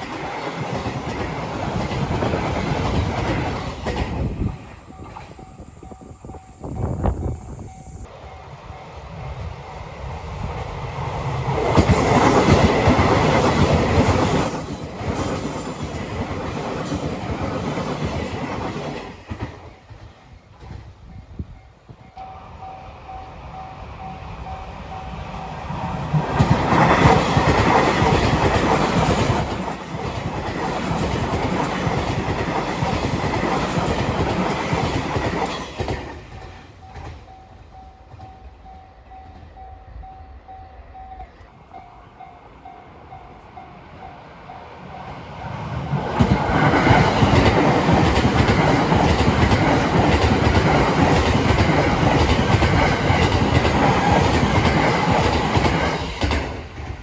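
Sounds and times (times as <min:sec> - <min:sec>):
train wheels clattering: 0:00.0 - 0:06.2, 0:11.3 - 0:22.3, 0:25.9 - 0:38.6, 0:45.9 - 0:57.0
level crossing warning bell: 0:04.8 - 0:09.0.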